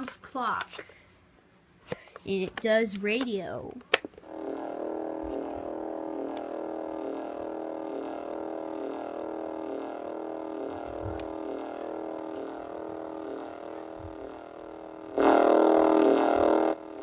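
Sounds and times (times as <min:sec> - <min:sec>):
droning tone from speaker: 0:04.2 - 0:17.0.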